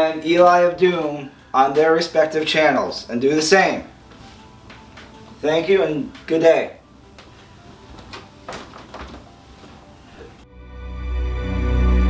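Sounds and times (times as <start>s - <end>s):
music with held notes: 3.8s - 12.0s
soft knocks: 4.6s - 5.4s, 7.1s - 10.4s.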